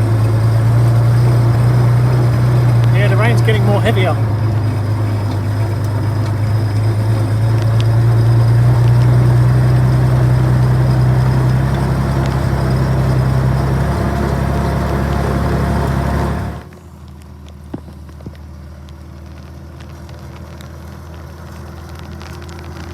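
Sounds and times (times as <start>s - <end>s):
aircraft tug engine running: 0.0s - 22.9s
rain hissing: 0.0s - 22.9s.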